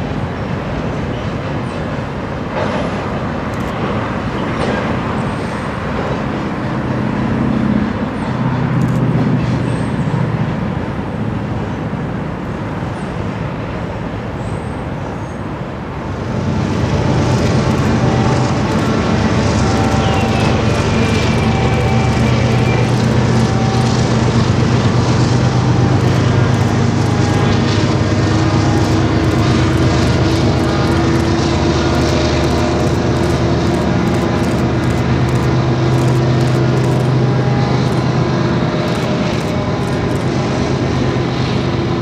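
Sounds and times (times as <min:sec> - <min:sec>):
train cars rumbling and rattling: 0:00.0 - 0:42.0
diesel engine drone: 0:15.4 - 0:42.0.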